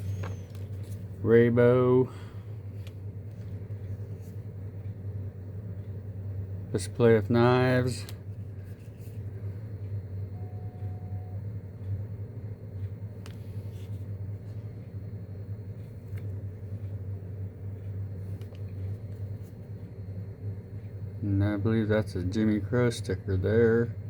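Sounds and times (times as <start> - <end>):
low background hum: 0.0 - 24.0.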